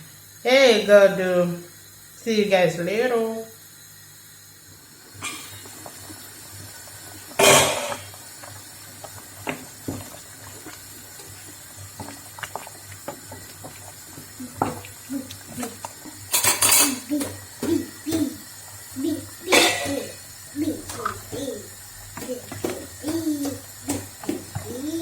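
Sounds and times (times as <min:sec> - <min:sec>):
pots and utensils clattering: 0:07.4 - 0:08.2, 0:11.9 - 0:18.4, 0:19.5 - 0:20.2.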